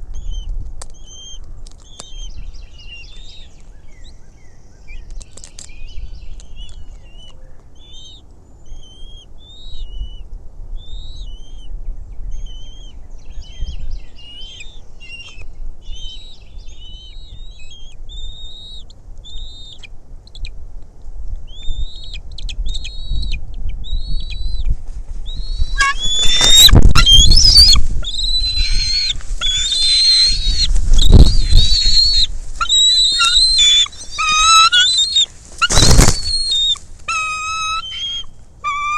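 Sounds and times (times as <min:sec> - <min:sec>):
eagles chirping: 0:25.3 - 0:38.9.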